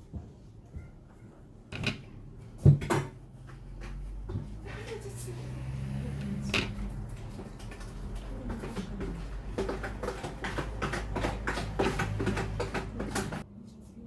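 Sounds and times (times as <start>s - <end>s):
lemons and kitchen things clattering: 6.3s - 13.4s.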